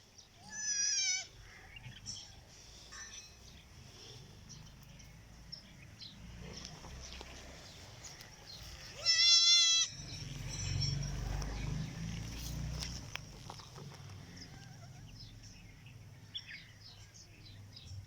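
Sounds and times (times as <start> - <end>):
goat kid bleating: 0.4 - 1.4, 8.9 - 10.0.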